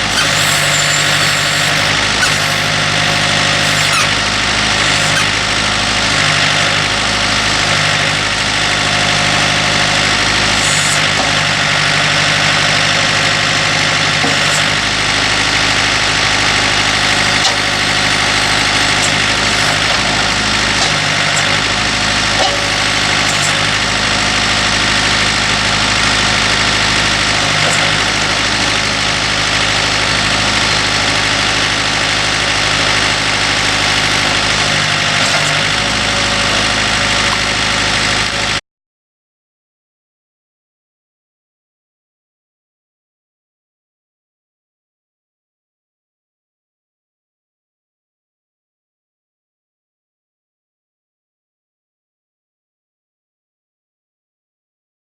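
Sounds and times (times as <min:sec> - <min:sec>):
tractor engine running: 0:00.0 - 0:38.6.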